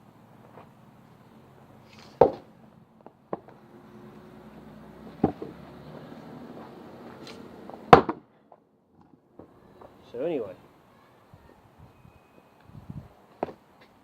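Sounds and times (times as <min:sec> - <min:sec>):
axe chopping log: 0:02.0 - 0:02.5, 0:07.9 - 0:08.2.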